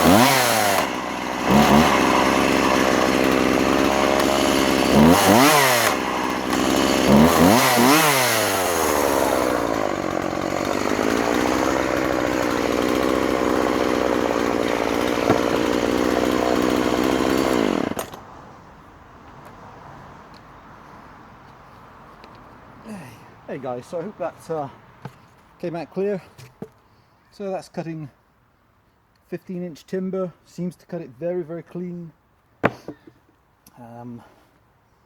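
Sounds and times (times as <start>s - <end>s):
chainsaw revving and cutting log: 0.0s - 18.2s.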